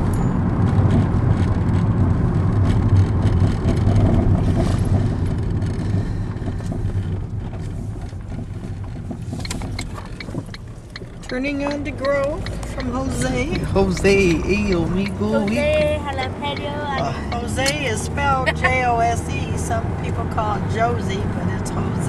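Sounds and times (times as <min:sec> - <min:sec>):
car road noise rumble: 0:00.0 - 0:22.0.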